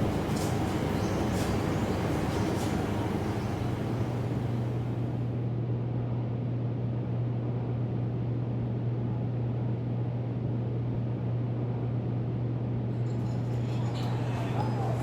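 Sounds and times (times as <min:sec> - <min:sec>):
constant background noise: 0:00.0 - 0:05.4
low mechanical hum: 0:00.0 - 0:15.0.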